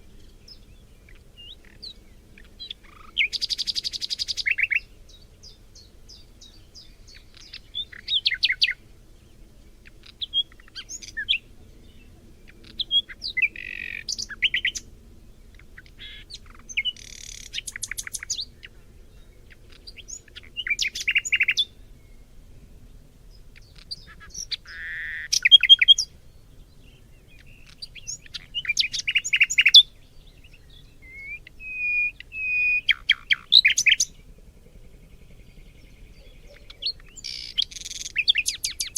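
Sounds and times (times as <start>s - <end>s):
birds chirping and trilling: 0.0s - 38.9s
faint low background rumble: 0.0s - 38.9s.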